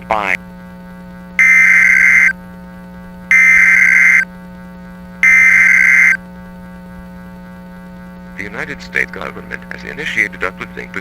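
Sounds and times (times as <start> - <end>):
low steady hum: 0.0 - 11.0
high buzzing data tones: 1.3 - 4.5, 5.1 - 6.4.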